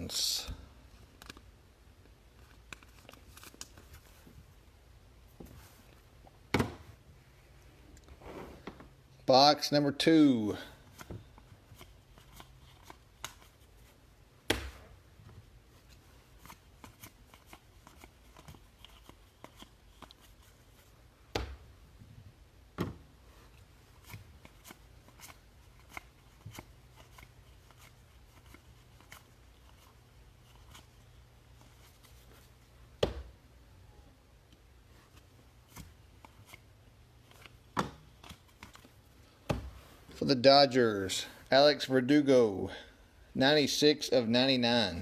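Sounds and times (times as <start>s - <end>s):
trading cards rustling: 2.3s - 4.3s, 10.8s - 14.0s, 15.7s - 20.9s, 23.3s - 32.6s.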